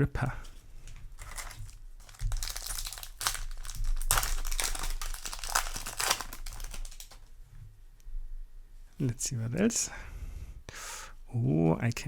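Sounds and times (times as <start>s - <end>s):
foil wrapper crinkling: 0.8s - 7.3s.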